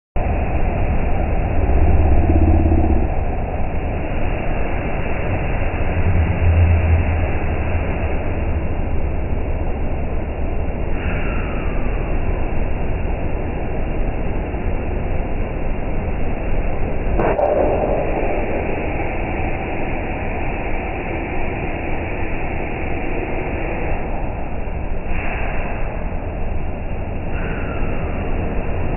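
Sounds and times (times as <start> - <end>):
dull machine rumbling: 0.2 - 25.1
deeper motor drone: 0.2 - 28.9.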